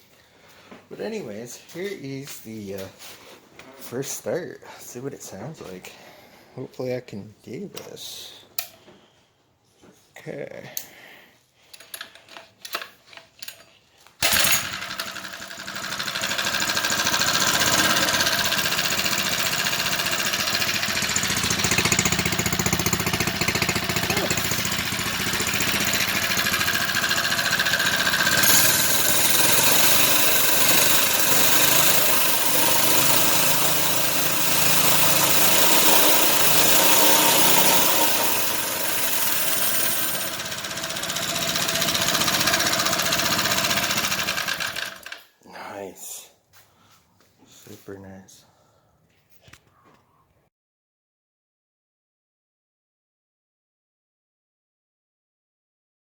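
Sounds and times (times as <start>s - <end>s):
small engine starting and running: 14.2s - 45.3s.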